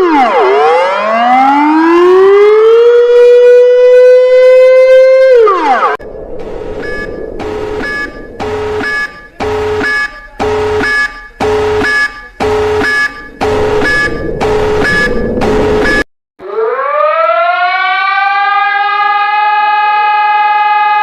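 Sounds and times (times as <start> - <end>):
pulsing two-tone warning siren: 0.0 - 21.0
noisy background: 6.0 - 16.0.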